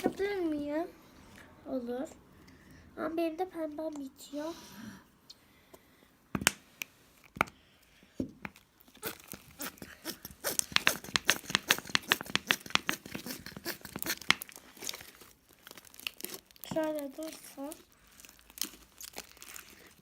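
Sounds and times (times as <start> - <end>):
slime squelching and popping: 8.4 - 20.0.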